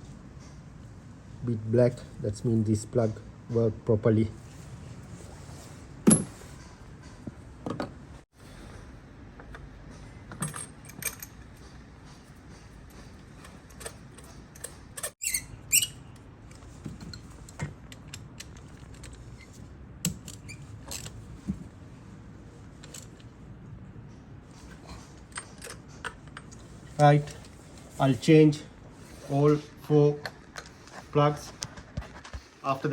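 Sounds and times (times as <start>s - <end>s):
small metal parts clinking: 10.3s - 11.6s.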